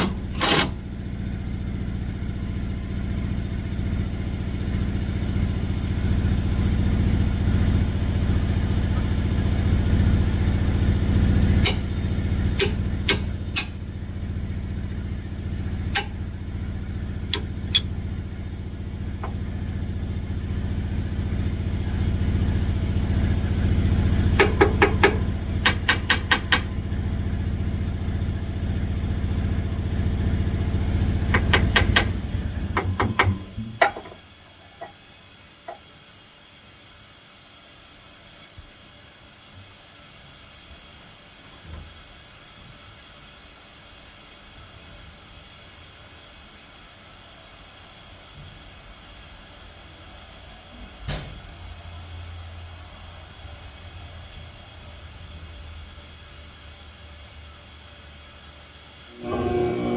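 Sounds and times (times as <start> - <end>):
sawmill edger engine running: 0.0 - 34.0, 59.0 - 59.9
rapid rattling clicks: 12.6 - 13.8.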